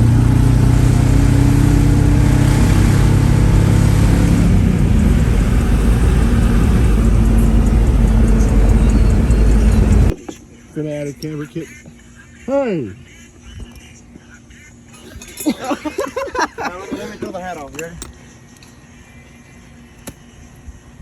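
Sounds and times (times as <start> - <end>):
car engine running: 0.0 - 10.2
road noise: 0.0 - 10.2.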